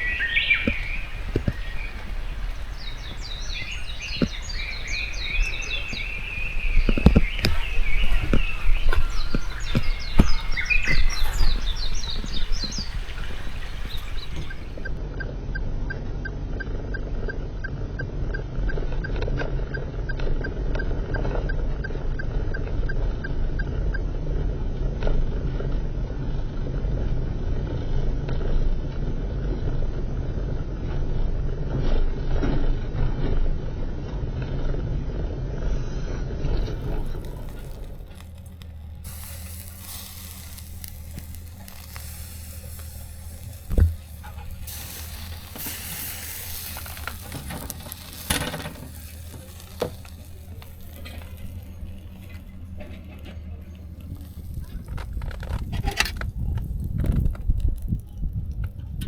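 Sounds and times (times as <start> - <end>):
food frying in a pan: 0.0 - 15.0, 36.6 - 52.9
steady low rumbling: 0.0 - 59.0.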